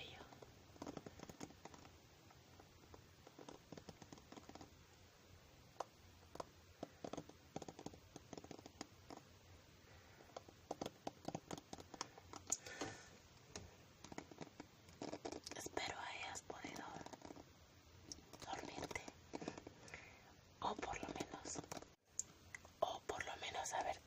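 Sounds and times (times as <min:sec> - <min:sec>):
soft taps and scratches: 0:00.0 - 0:04.8, 0:05.8 - 0:09.3, 0:10.2 - 0:17.5, 0:18.1 - 0:19.8, 0:20.7 - 0:22.0.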